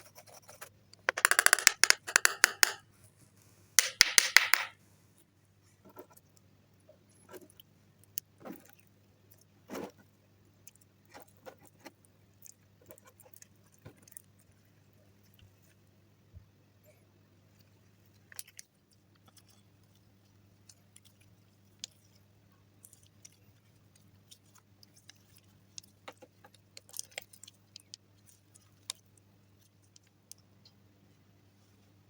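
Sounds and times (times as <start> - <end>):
dense rattling clicks: 1.1 - 2.8.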